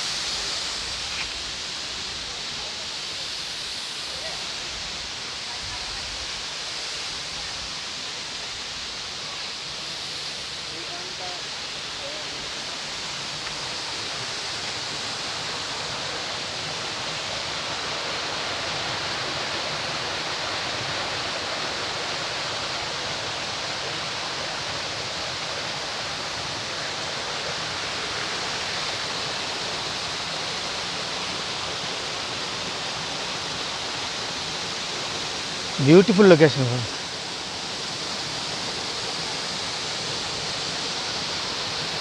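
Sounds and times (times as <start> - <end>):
waterfall rushing: 32.0 - 37.5.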